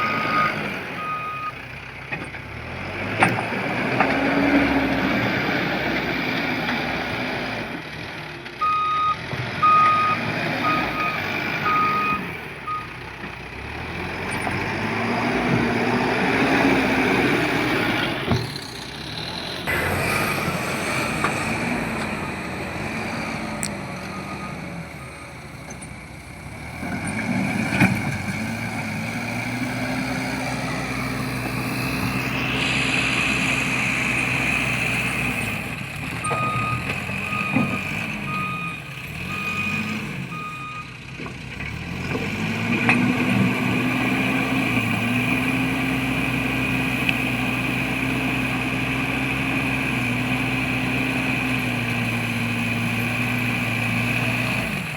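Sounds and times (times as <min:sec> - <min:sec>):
reversing alarm beeps: 0:00.0 - 0:01.6, 0:08.6 - 0:12.9, 0:23.1 - 0:25.8, 0:36.2 - 0:40.9
diesel engine revving: 0:00.0 - 0:54.9.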